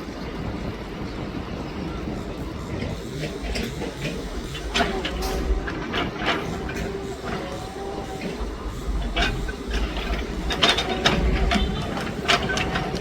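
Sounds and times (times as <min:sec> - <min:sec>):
excavator diesel engine rumbling: 0:00.6 - 0:13.0
metallic clanks and knocks: 0:03.5 - 0:13.0.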